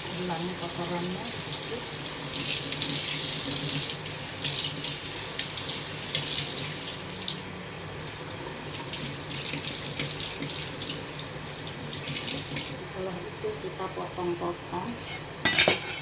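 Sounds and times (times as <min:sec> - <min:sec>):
tap water running into sink: 0:01.2 - 0:12.8.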